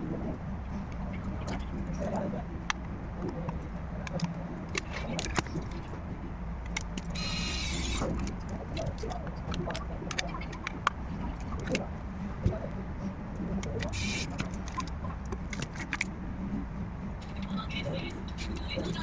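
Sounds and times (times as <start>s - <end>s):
steady low hum: 0.0s - 19.0s.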